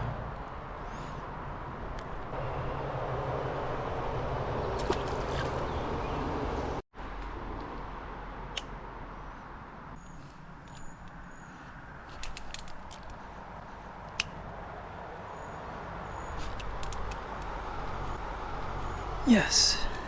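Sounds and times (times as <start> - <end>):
sharp clicks: 16.4 - 18.0.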